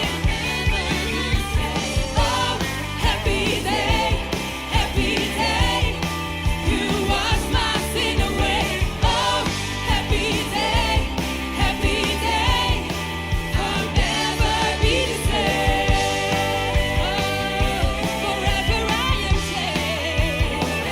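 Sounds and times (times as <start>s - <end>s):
band with drums and bass: 0.0s - 20.9s
people singing: 0.0s - 20.9s.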